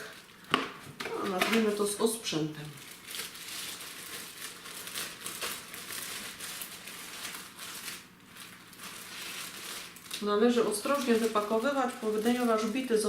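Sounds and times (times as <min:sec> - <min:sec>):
bag crinkling: 0:02.6 - 0:13.0.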